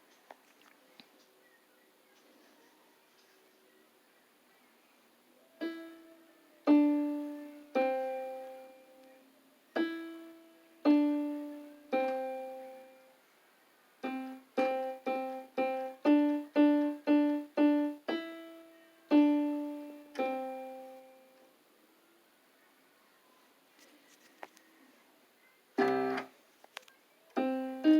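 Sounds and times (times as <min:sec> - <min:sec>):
electronic keyboard piano notes: 0:05.6 - 0:13.2, 0:14.0 - 0:21.5, 0:25.8 - 0:26.3, 0:27.3 - 0:27.9.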